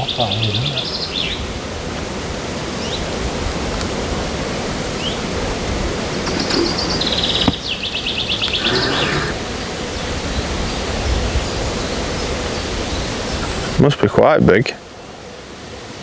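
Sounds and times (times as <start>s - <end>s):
bird trilling: 6.0s - 10.1s.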